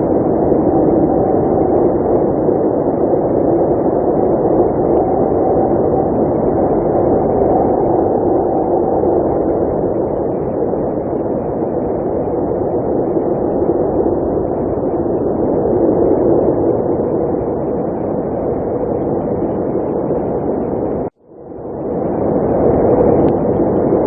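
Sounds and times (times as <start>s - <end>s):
blizzard wind blowing: 0.0s - 24.0s.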